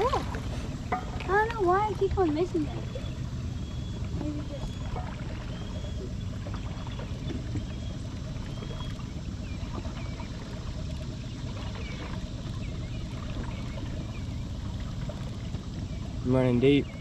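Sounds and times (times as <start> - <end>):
boat engine rumble: 0.0 - 17.0
water noise: 0.0 - 17.0
faint bird chirps: 2.6 - 10.3.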